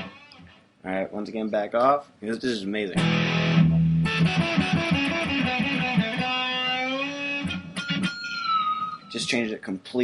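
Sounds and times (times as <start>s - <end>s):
deep electric guitar playing: 3.0s - 9.3s.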